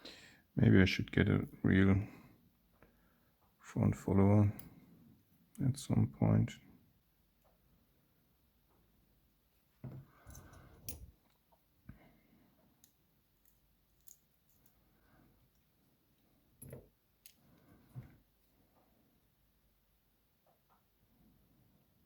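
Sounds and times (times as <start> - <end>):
lock parts clicking: 12.8 - 14.8.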